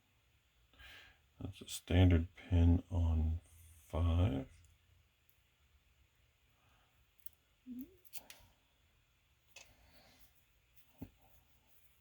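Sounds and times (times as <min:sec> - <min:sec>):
small clicks of lock parts: 0:08.0 - 0:08.4.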